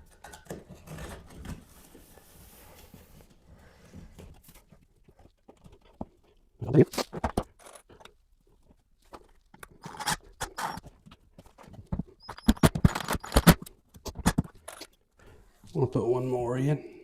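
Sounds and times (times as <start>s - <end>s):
knocks clicks and scrapes on drywall: 0.0s - 2.1s, 7.0s - 15.0s.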